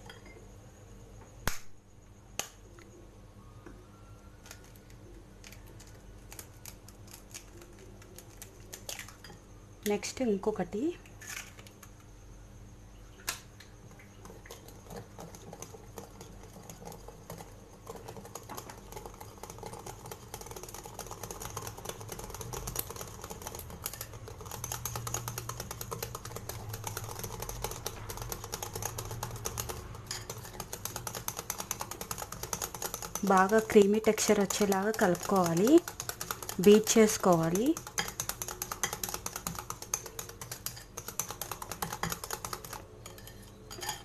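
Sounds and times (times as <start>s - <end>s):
utensil beating batter in bowl: 13.8s - 44.0s.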